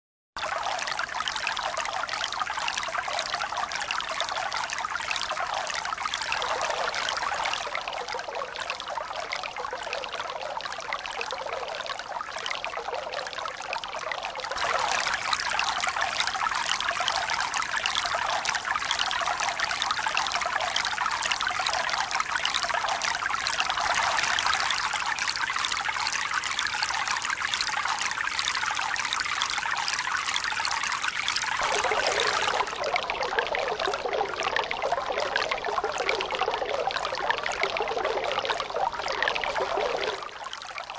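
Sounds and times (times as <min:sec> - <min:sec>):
fountain water splashing: 0:14.6 - 0:32.9.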